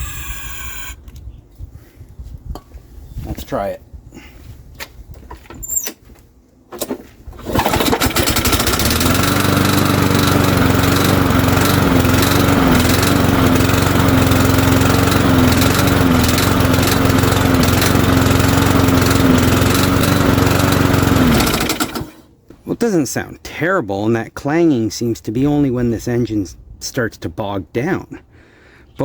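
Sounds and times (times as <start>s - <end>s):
lawn mower engine running: 6.8s - 22.3s.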